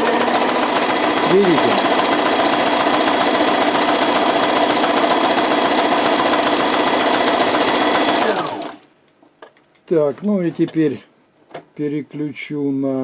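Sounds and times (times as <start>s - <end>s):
sewing machine stitching: 0.0s - 8.8s.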